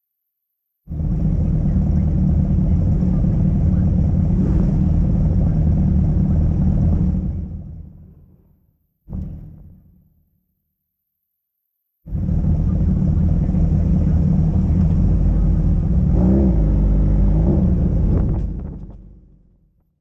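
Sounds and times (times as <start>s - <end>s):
drag-racing engines at full throttle: 0.9s - 8.5s, 12.1s - 19.4s.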